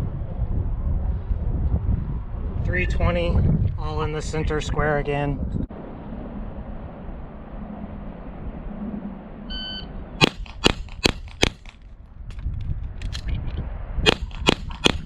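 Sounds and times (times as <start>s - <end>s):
wind noise on microphone: 0.0s - 15.0s
pistol shots: 10.2s - 11.8s, 14.1s - 15.0s.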